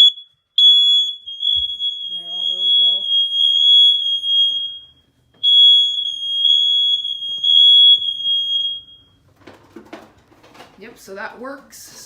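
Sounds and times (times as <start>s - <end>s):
smoke alarm high-pitched tone: 0.0s - 9.2s.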